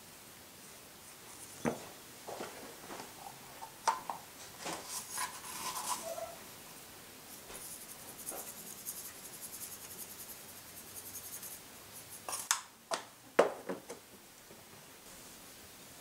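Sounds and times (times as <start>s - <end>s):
fast scratchy rubbing: 7.3s - 12.4s.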